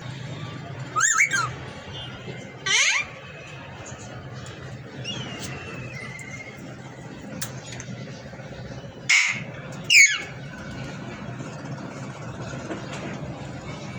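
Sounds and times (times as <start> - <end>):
parrot squawking: 1.0 - 1.6, 2.6 - 3.2, 9.1 - 10.4.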